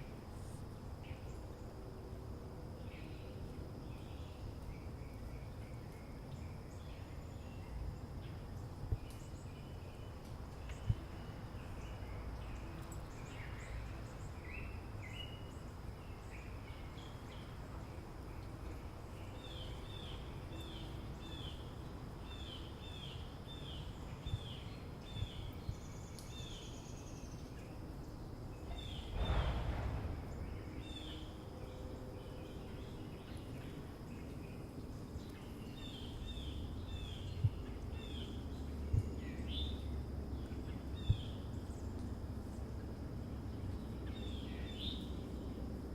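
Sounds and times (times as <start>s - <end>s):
steady low rumble: 28.0s - 45.9s
brief whoosh: 29.1s - 30.6s.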